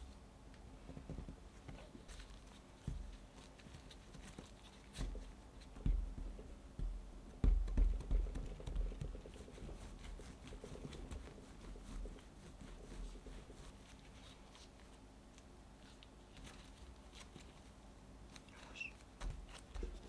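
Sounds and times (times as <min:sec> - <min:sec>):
soft thumps: 0:04.9 - 0:09.8.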